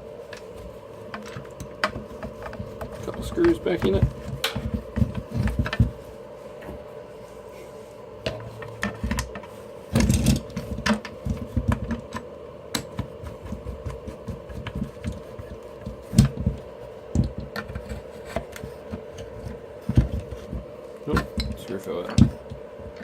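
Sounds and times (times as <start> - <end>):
steady hum: 0.0 - 23.0.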